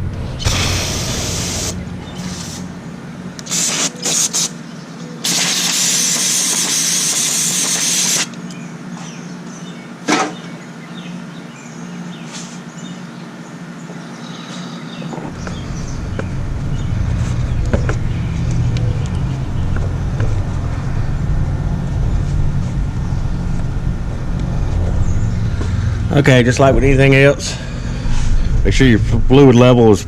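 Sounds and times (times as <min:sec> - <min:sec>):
steady low hum: 0:00.0 - 0:06.0, 0:07.2 - 0:30.0
hissing spray bursts: 0:00.3 - 0:02.8, 0:03.4 - 0:04.6, 0:05.2 - 0:08.4.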